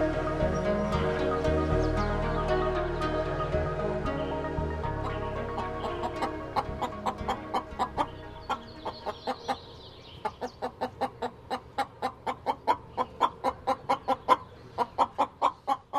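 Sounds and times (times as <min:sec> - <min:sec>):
chicken clucking: 0:05.5 - 0:15.9.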